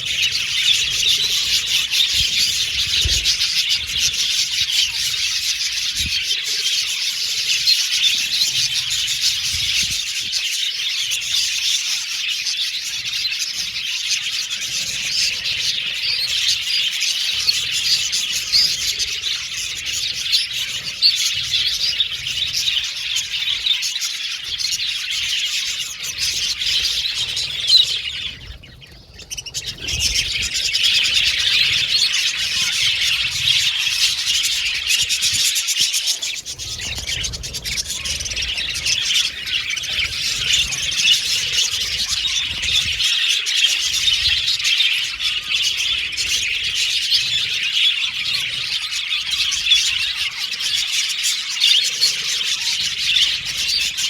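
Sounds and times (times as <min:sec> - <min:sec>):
budgies chattering and chirping: 0:00.0 - 0:54.0.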